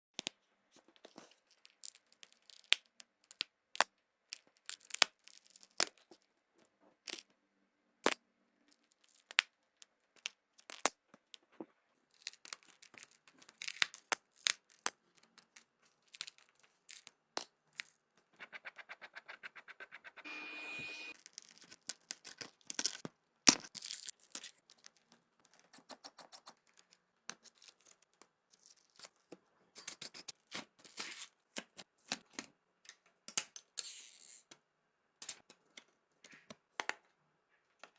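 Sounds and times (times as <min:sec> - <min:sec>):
fast even buzzing: 0:20.0 - 0:21.2
brief steady beep: 0:20.2 - 0:21.2.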